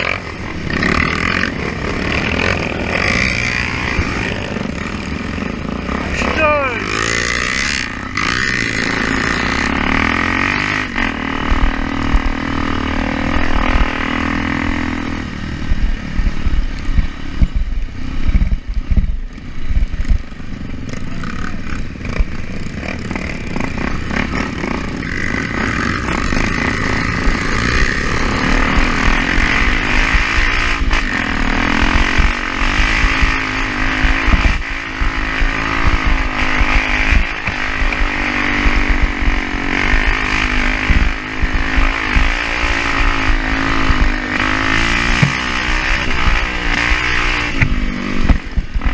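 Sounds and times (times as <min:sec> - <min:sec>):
off-road motorcycle engine: 0:00.0 - 0:48.9
heavy low rumbling and thumping: 0:11.3 - 0:20.4, 0:34.0 - 0:42.4.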